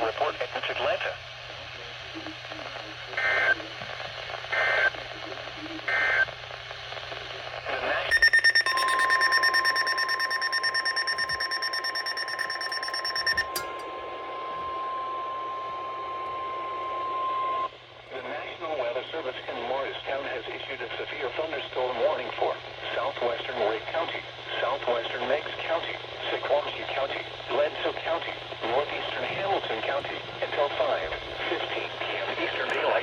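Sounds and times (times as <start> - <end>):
steady weather radio alert tone: 0.0 - 3.8, 7.2 - 13.8
pulsing electronic alarm tone: 8.1 - 13.8.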